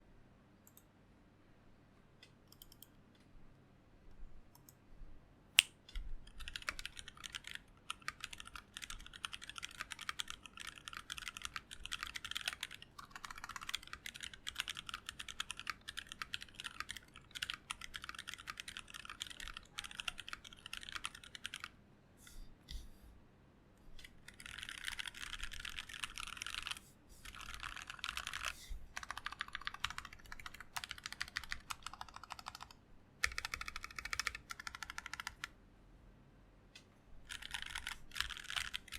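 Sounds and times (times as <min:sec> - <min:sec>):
typing on mechanical keyboard: 0:06.3 - 0:21.7, 0:24.0 - 0:35.5, 0:37.3 - 0:38.9.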